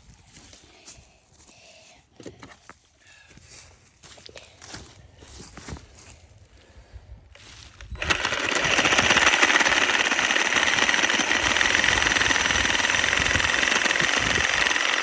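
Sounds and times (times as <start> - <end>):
power saw cutting bone: 8.0 - 15.0.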